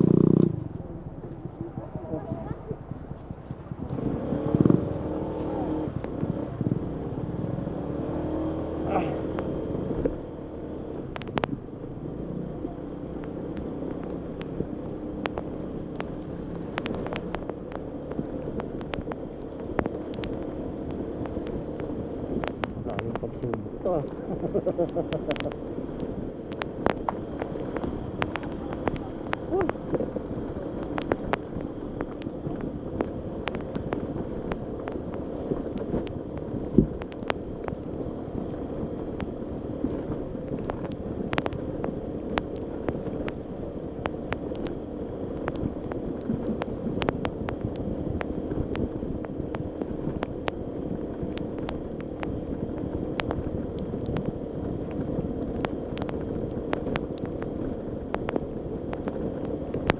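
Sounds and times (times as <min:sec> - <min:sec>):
scooter engine running: 0:00.0 - 0:07.9
clicks and knocks from bumpy ride: 0:26.5 - 0:38.0.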